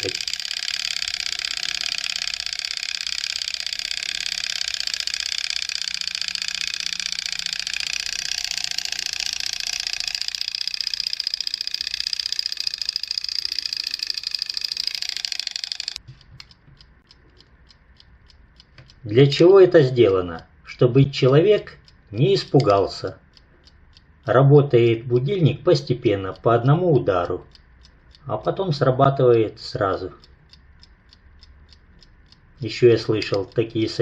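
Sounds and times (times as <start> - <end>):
mechanical alarm clock ringing: 0.0 - 16.0, 32.6 - 34.0
faint clock ticking: 0.0 - 34.0.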